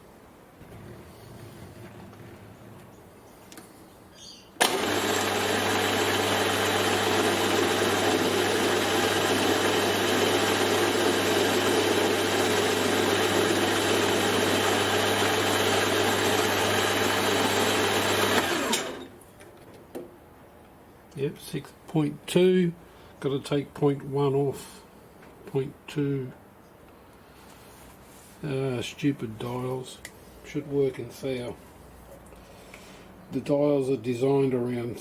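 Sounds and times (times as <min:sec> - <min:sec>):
machine tool motor running: 0:04.6 - 0:19.1
motor winding down: 0:04.6 - 0:19.1.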